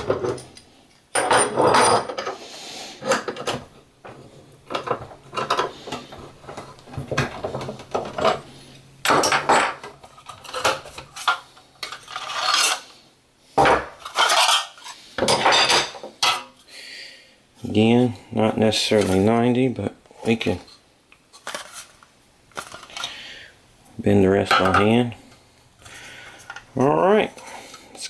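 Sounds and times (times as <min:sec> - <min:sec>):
metallic clanks and scrapes: 0:09.1 - 0:13.0, 0:14.0 - 0:16.5.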